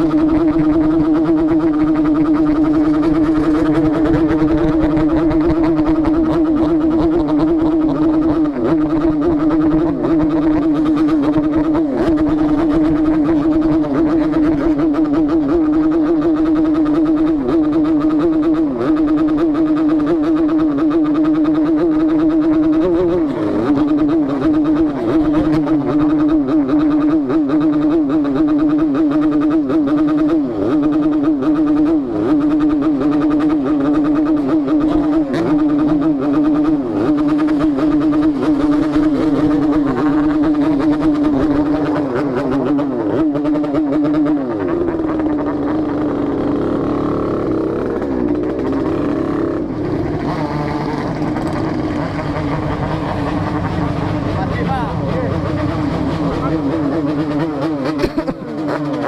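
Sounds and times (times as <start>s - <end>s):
two-stroke motorcycle engine running: 0.0s - 59.0s.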